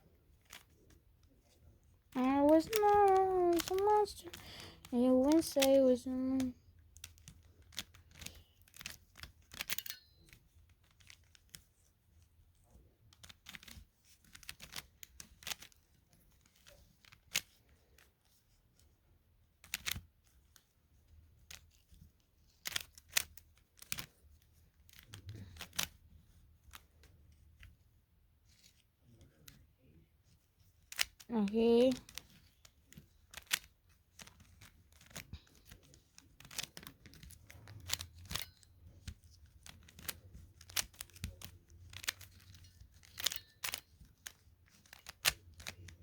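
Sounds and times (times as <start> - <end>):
puzzle cube clicking: 0.3 - 1.5, 2.1 - 11.7, 13.1 - 18.1, 19.6 - 20.6, 21.3 - 27.8, 30.7 - 46.0.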